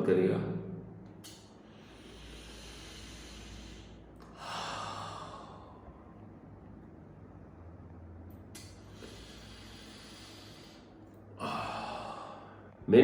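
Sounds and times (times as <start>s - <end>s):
sharp nasal sniff: 1.7s - 4.0s, 8.6s - 11.0s
hissing breath through nose: 1.7s - 5.7s, 8.7s - 11.0s.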